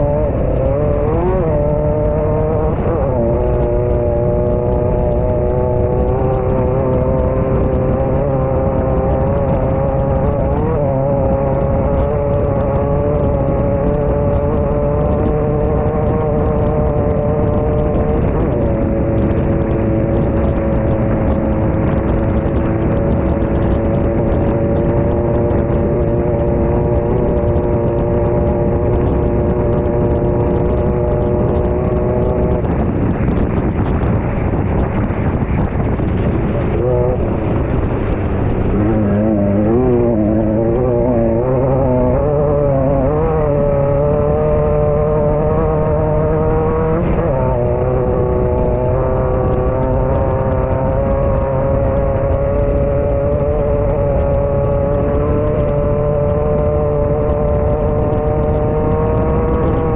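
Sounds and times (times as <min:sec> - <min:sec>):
race buggy engine: 0:00.0 - 0:59.9
wind and terrain noise: 0:00.0 - 0:59.9.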